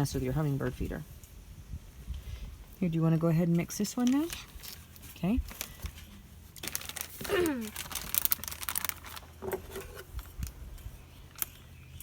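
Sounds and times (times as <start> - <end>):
plastic items clicking and knocking: 6.6 - 10.5.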